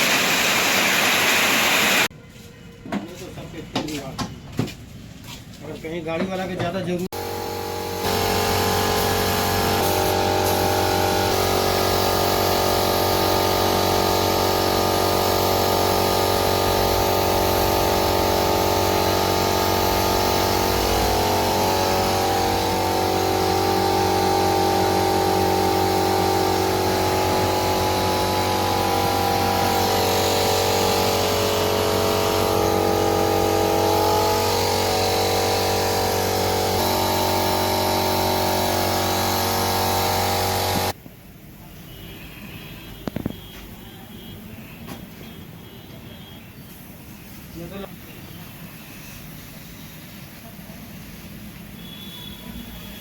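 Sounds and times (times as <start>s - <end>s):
electric power tool motor running: 7.2s - 41.0s.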